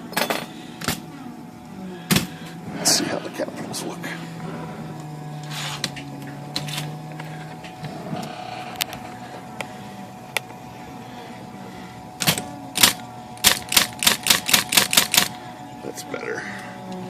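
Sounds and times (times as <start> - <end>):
electric typewriter motor humming: 0.0 - 17.0
typewriter mechanism clicks: 12.2 - 15.3
typewriter type strikes: 12.2 - 15.3.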